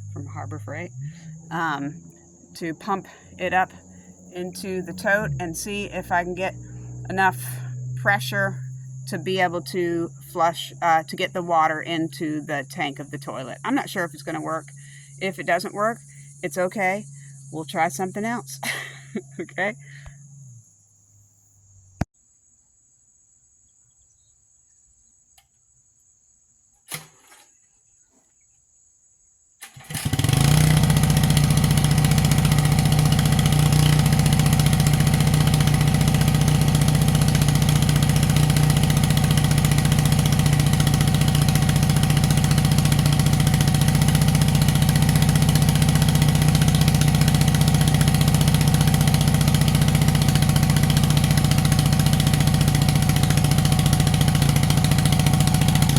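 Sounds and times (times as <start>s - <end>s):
pump engine running: 0.0s - 10.7s, 29.7s - 55.9s.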